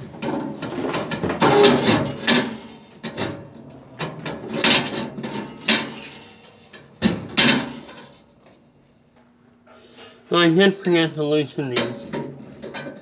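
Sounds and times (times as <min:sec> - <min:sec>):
metal burner parts rattling: 0:00.0 - 0:08.4, 0:11.6 - 0:13.0.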